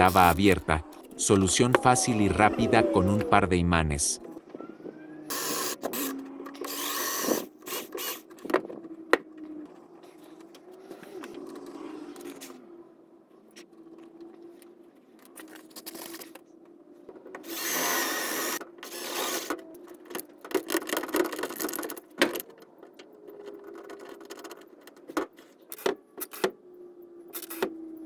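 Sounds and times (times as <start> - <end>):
small parts clicking and tapping: 18.5 - 28.0.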